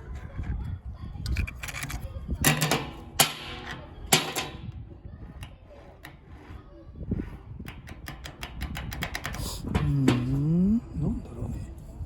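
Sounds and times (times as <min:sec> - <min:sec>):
sander handling clicks and knocks: 0:07.6 - 0:10.4.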